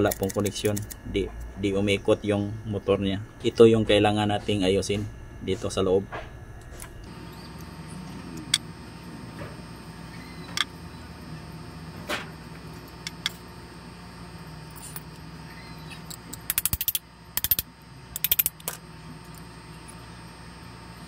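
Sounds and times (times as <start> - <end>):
sharp metallic clicks: 16.4 - 17.6.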